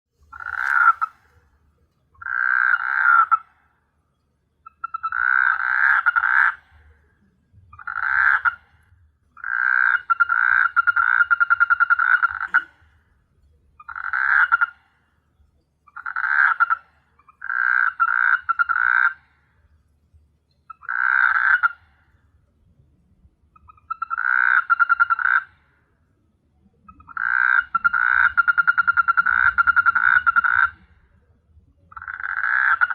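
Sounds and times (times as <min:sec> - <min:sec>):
frog rattling croaks: 0:00.3 - 0:01.4, 0:02.2 - 0:03.5, 0:04.6 - 0:07.0, 0:07.7 - 0:08.8, 0:09.4 - 0:12.9, 0:13.8 - 0:14.9, 0:15.9 - 0:19.3, 0:20.7 - 0:22.0, 0:23.6 - 0:25.6, 0:26.9 - 0:30.9, 0:31.9 - 0:32.9.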